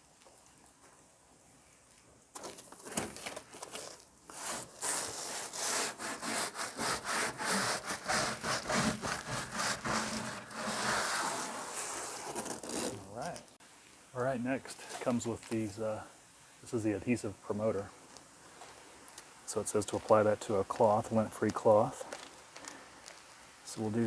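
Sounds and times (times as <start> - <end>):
cloth scrubbing a surface: 3.8 - 13.2.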